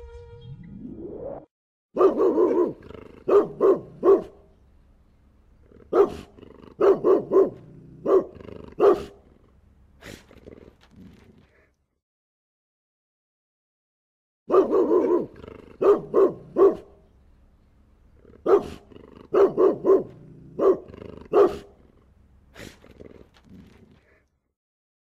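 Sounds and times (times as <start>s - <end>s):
short rising sound: 0.0s - 1.5s
dog barking: 2.0s - 4.4s, 5.8s - 9.3s, 14.5s - 17.0s, 18.4s - 21.8s.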